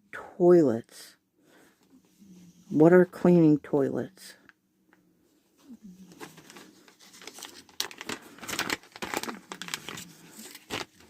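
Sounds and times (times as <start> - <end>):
plastic packet crinkling and tearing: 6.0 - 11.0.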